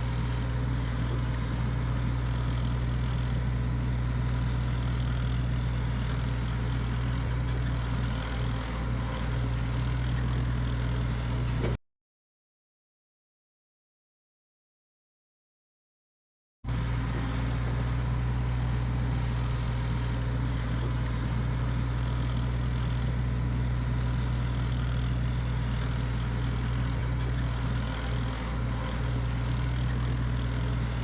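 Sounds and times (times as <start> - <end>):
excavator diesel engine running: 0.0 - 11.8, 16.7 - 31.0.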